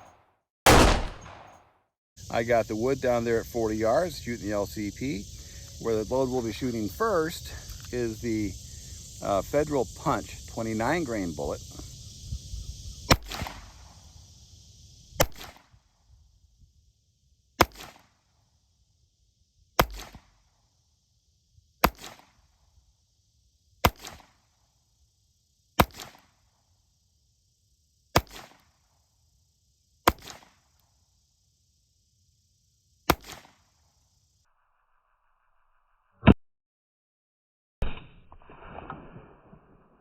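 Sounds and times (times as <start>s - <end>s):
pistol shots with echo: 0.0s - 1.6s.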